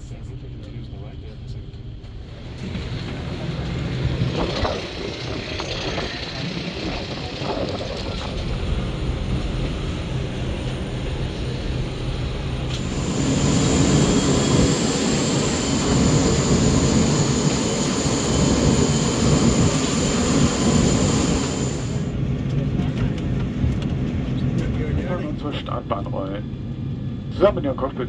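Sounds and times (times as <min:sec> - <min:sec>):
jet airliner rumble: 0:00.0 - 0:28.0
jet rush with high whine: 0:01.4 - 0:22.3.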